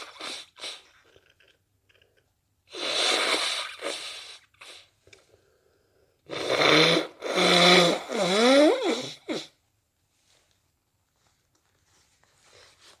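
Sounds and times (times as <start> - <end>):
person blowing nose: 0.0 - 1.4, 2.7 - 5.0, 6.3 - 9.6.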